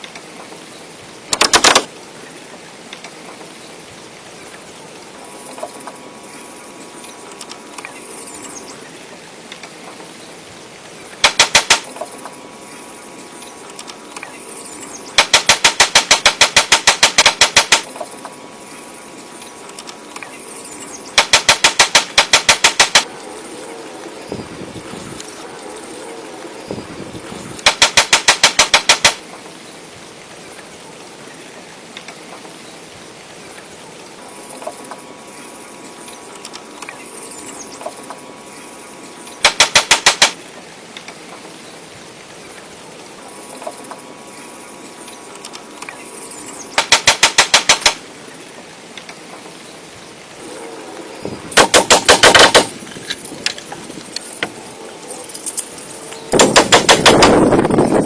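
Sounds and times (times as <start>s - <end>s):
power tool hammering bursts: 11.2s - 11.9s, 15.2s - 17.8s, 21.2s - 23.1s, 27.6s - 29.2s, 39.4s - 40.4s, 46.8s - 48.0s, 51.6s - 53.2s, 56.4s - 57.5s.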